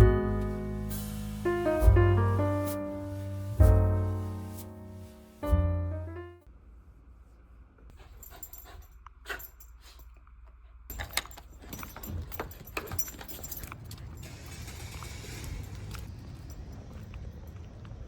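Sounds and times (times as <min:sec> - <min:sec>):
low background rumble: 0:00.0 - 0:10.9
light metallic jingling: 0:08.0 - 0:10.2, 0:10.9 - 0:16.8.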